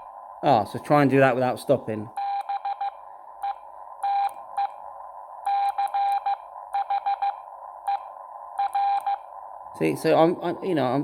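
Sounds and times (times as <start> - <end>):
morse code beeps: 2.2 - 4.8, 5.4 - 9.3.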